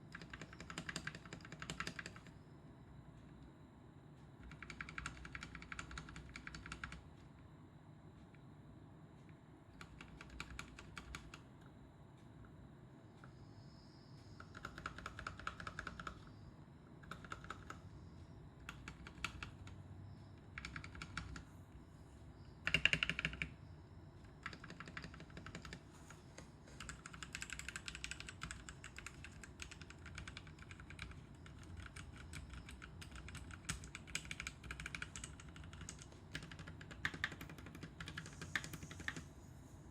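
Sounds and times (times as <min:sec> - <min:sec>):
mechanical keyboard typing: 0:00.0 - 0:02.3, 0:04.4 - 0:07.1, 0:09.8 - 0:11.4, 0:14.4 - 0:16.3, 0:17.0 - 0:17.8, 0:18.6 - 0:19.8, 0:20.4 - 0:21.4, 0:22.6 - 0:23.6, 0:24.2 - 0:25.9, 0:26.8 - 0:39.3.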